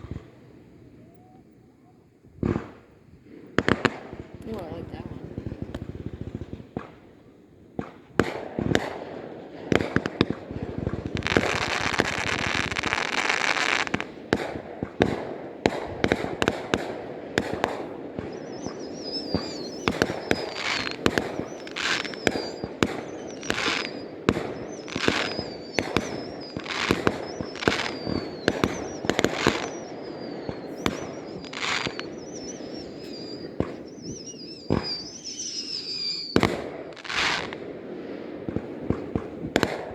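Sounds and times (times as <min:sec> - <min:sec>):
fireworks bangs: 0:02.3 - 0:39.9
fireworks crackling: 0:02.3 - 0:39.9
high wavering whistle: 0:18.2 - 0:36.6.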